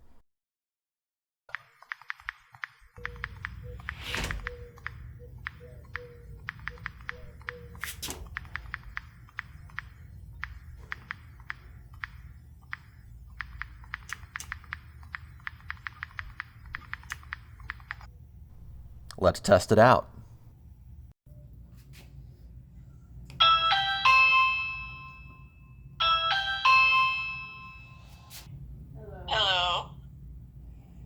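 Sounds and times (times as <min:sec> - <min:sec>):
phone keyboard key clicks: 0:03.0 - 0:18.1.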